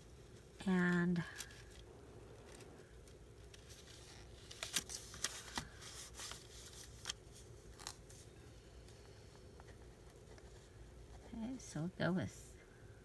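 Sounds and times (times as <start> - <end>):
paper clicks and rustles: 1.2 - 10.7.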